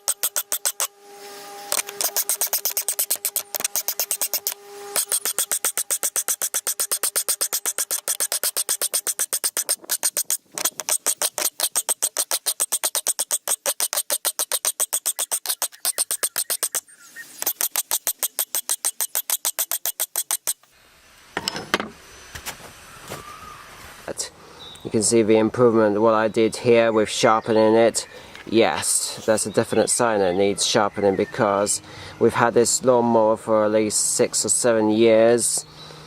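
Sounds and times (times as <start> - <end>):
file rasping on steel: 0.0 - 0.9, 1.5 - 16.8, 17.4 - 20.7.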